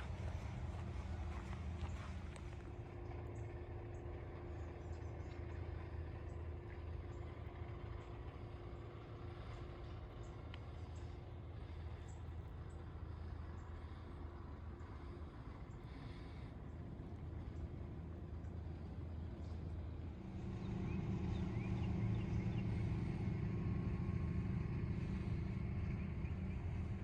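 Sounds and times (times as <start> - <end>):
faint footsteps: 0.0 - 2.8
distant industrial machinery rumble: 0.0 - 27.0
steady hum: 0.0 - 27.0.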